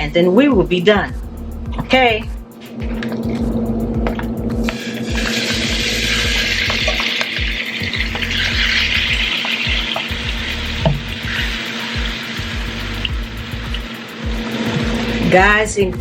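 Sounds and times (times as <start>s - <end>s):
chicken sizzling in oil: 4.6s - 15.3s.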